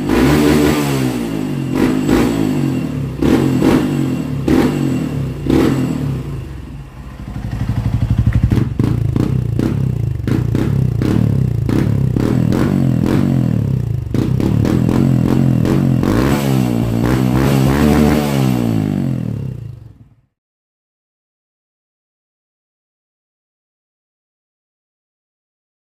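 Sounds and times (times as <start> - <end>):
motorcycle engine revving: 0.0 - 20.2.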